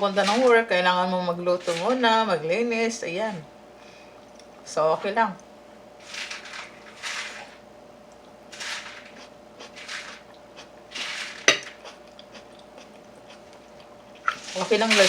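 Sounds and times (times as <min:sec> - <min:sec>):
faint steady hum: 0:00.0 - 0:15.0
cookware scraping swishes: 0:06.0 - 0:07.6, 0:08.5 - 0:10.3, 0:10.9 - 0:11.9, 0:14.3 - 0:15.0.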